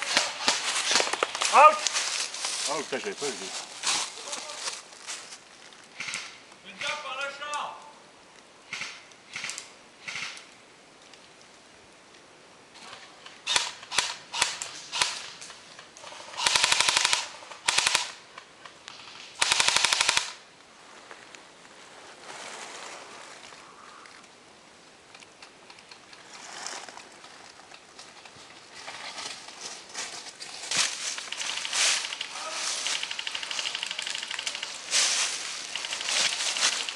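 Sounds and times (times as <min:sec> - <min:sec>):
soft rustling: 0:00.0 - 0:05.9, 0:20.7 - 0:24.3, 0:26.1 - 0:36.9
airsoft guns firing: 0:16.3 - 0:18.2, 0:19.4 - 0:20.4.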